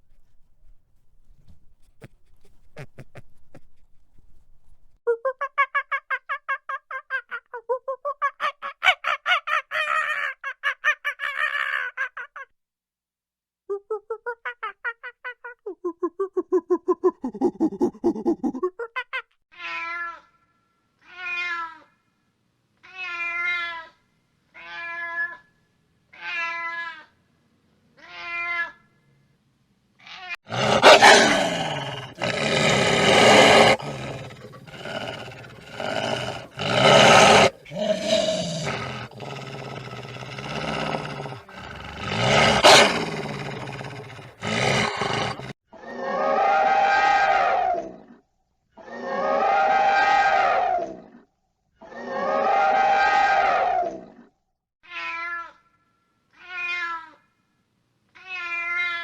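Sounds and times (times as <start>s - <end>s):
cat meowing: 21.0s - 21.8s, 54.8s - 55.6s, 56.4s - 57.2s, 58.2s - 59.0s
rough growling and roaring: 30.5s - 45.5s.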